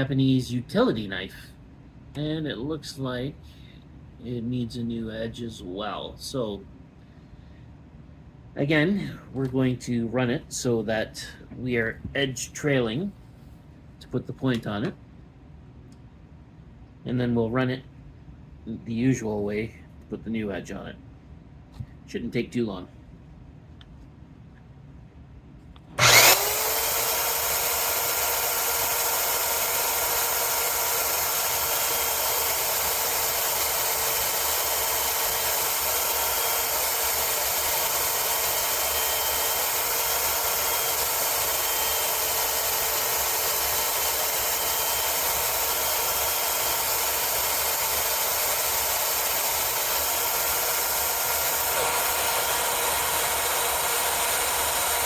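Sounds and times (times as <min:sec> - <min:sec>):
belt sharpener motor whine: 0:26.0 - 0:55.0.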